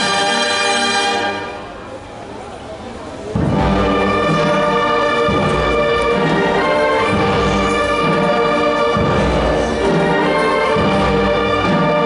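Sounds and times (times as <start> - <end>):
brass band chords: 0.0 - 2.0, 3.3 - 12.0
low drum beat: 3.4 - 12.0.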